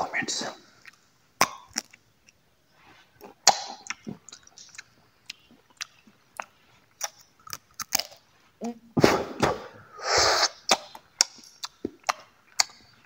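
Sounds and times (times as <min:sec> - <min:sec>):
chewing crunchy dry fruit: 0:00.7 - 0:02.4, 0:03.0 - 0:08.7, 0:10.7 - 0:13.0.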